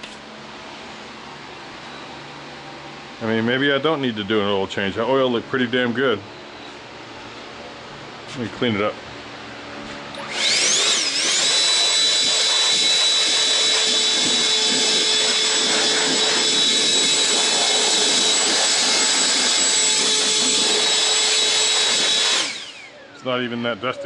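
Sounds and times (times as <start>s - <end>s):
electric fan motor whining: 0.0s - 24.0s.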